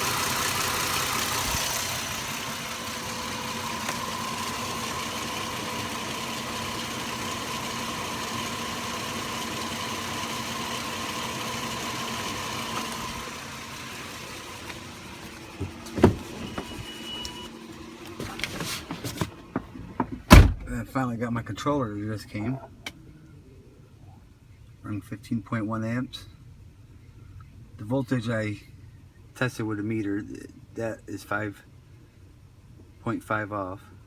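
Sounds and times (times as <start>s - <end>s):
car engine idling: 0.0s - 21.1s.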